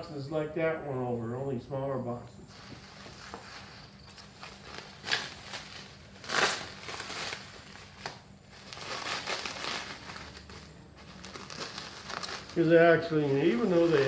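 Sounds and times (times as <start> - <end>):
packing material crinkling: 2.8 - 14.0.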